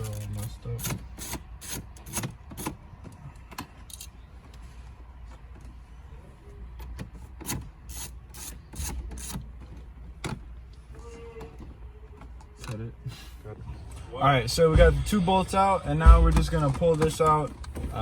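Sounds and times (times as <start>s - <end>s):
driver clicking and scraping bolts: 0.0s - 2.8s, 6.8s - 10.4s.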